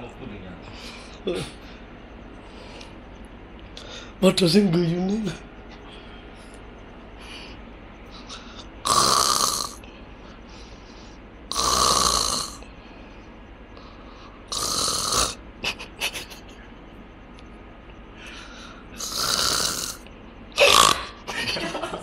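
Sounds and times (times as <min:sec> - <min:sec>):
person snoring loudly: 0:08.8 - 0:09.8, 0:11.5 - 0:12.6, 0:14.5 - 0:15.4, 0:19.0 - 0:20.0, 0:20.6 - 0:21.2
short choppy snoring sounds: 0:08.8 - 0:09.8, 0:11.5 - 0:12.6, 0:14.5 - 0:15.4, 0:19.0 - 0:20.0.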